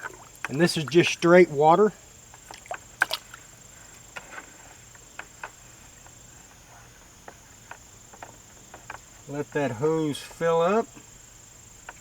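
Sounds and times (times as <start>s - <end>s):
hose dipped in water: 0.0s - 1.6s, 2.4s - 3.4s
crickets droning: 0.0s - 12.0s
garden hose clicks and knocks: 2.3s - 3.4s.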